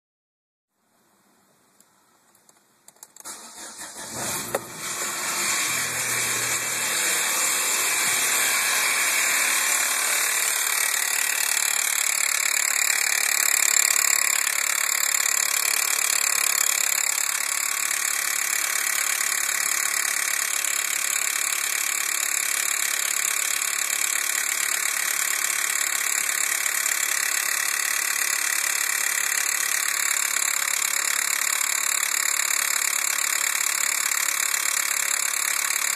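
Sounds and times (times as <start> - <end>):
car engine cranking and idling: 2.9 - 35.9
strange engine noise: 3.9 - 30.8.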